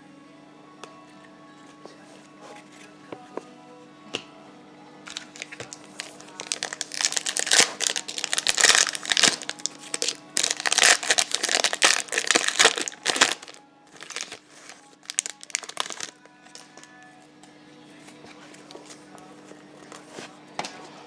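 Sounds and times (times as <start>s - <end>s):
card pack wrapper crinkling and tearing: 5.1s - 16.9s
cards rustling and clicking: 5.1s - 16.9s.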